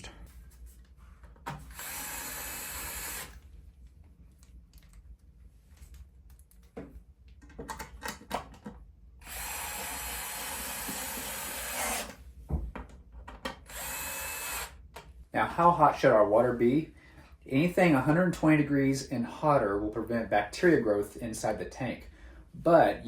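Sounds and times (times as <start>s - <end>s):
electric screwdriver running: 1.7s - 3.4s, 9.2s - 12.2s, 13.7s - 14.8s.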